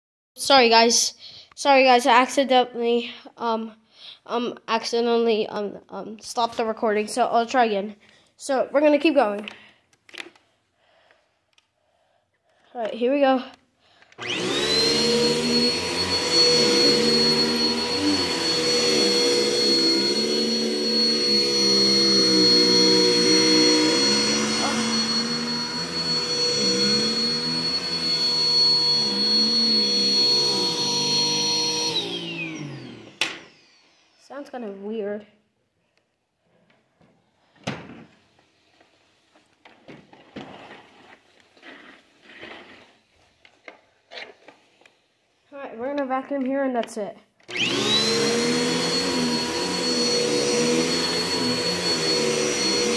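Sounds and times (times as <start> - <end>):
vacuum cleaner motor whining: 14.1 - 34.2, 47.5 - 52.9.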